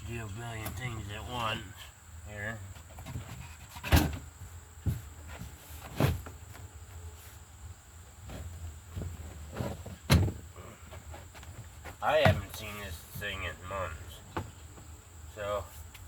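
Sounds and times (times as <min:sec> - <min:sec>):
objects knocking and thumping: 0:02.8 - 0:06.6, 0:08.2 - 0:12.7.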